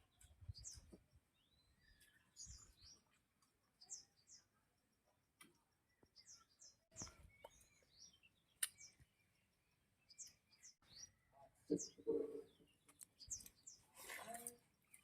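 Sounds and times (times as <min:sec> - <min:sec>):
faint bird chirps: 0:00.0 - 0:15.0.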